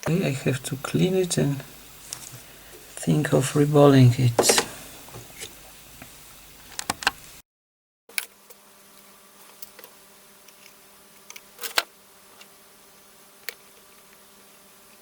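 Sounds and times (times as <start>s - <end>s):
faint electrical hum: 0.0s - 7.4s, 8.2s - 15.0s.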